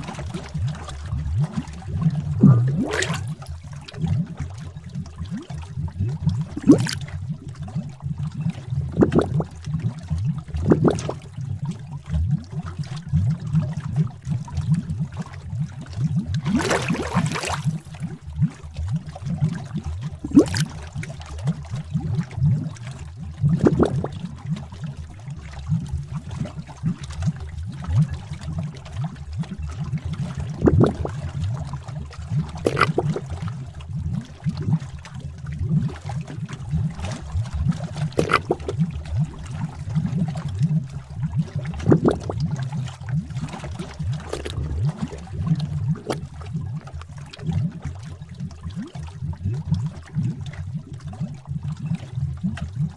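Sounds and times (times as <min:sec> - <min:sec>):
thick liquid bubbling: 0:00.0 - 0:52.9
bubbles popping: 0:00.3 - 0:11.4, 0:16.0 - 0:18.6, 0:20.2 - 0:21.0, 0:23.4 - 0:24.3, 0:30.4 - 0:31.5, 0:32.3 - 0:52.8
low rumble: 0:02.2 - 0:03.5.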